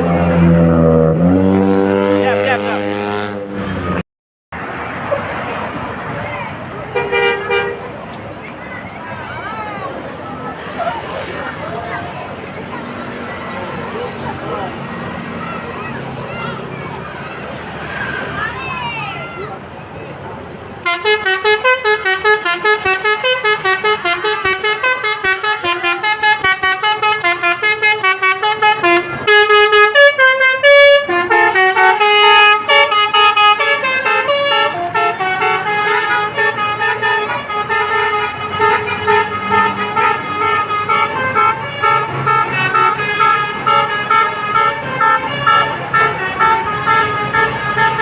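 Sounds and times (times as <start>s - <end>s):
bus horn playing a melody: 6.9s - 7.9s, 20.8s - 48.0s.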